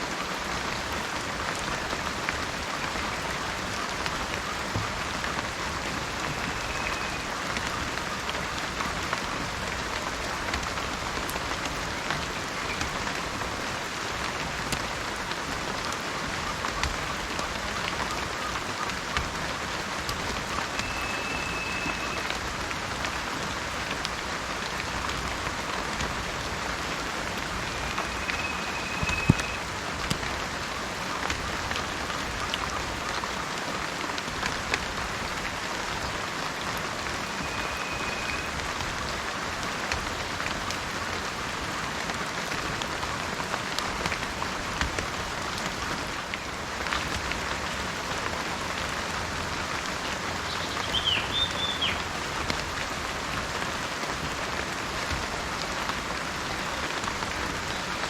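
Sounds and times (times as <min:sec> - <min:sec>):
steady rain falling: 0:00.0 - 0:58.0
faint high whistles: 0:20.8 - 0:22.3, 0:27.7 - 0:29.6, 0:37.4 - 0:38.5
brief chirp: 0:28.0 - 0:29.6.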